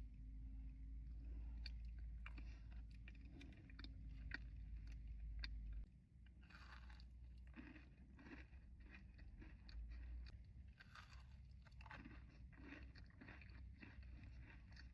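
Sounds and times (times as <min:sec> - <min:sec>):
soft crunching chewing: 0:00.0 - 0:14.9.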